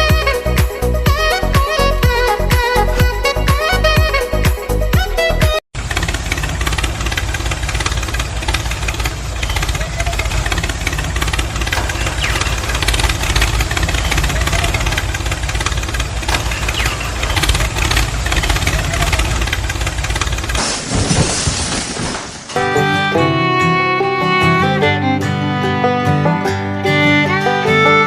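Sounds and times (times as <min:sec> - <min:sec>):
engine running with low rumble: 0:00.0 - 0:21.7.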